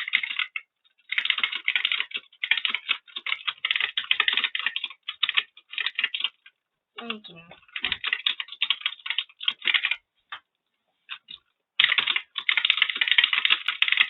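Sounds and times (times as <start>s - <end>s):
fast keyboard typing: 0.0s - 10.5s, 11.1s - 14.0s.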